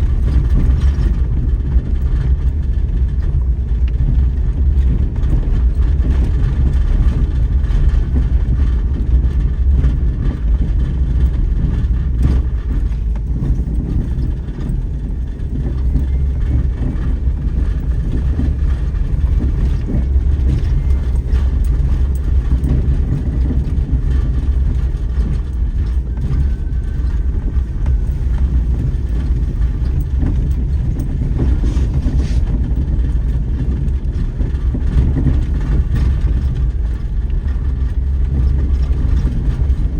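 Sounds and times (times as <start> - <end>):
car engine and road rumble: 0.0 - 39.9.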